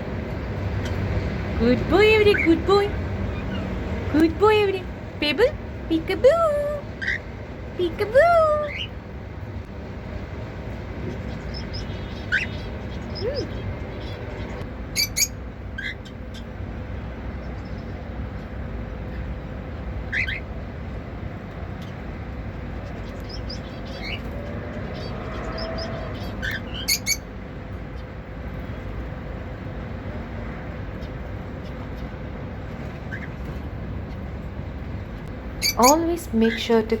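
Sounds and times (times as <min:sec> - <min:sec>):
low background hum: 0:00.0 - 0:37.0
cockatiels chirping: 0:11.3 - 0:14.2, 0:15.0 - 0:16.5, 0:20.1 - 0:20.4, 0:25.0 - 0:27.2, 0:33.1 - 0:33.3.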